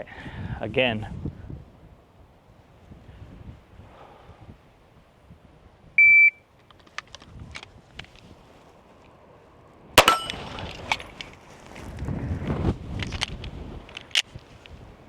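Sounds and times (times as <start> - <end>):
metallic handling clicks: 6.6 - 8.3, 13.0 - 14.8
pistol shot: 10.0 - 10.7.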